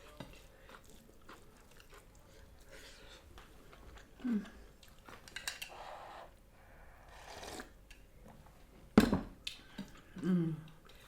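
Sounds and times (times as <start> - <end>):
crunching and chewing food: 0.0 - 5.6.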